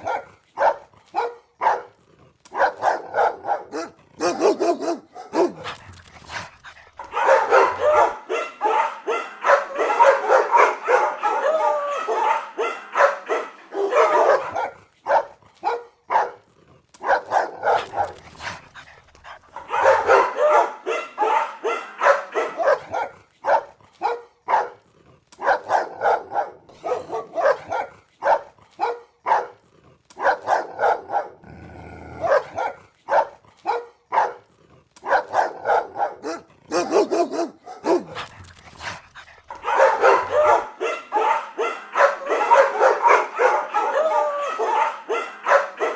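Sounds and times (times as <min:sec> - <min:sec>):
dogs barking aggressively: 0:00.0 - 0:45.9.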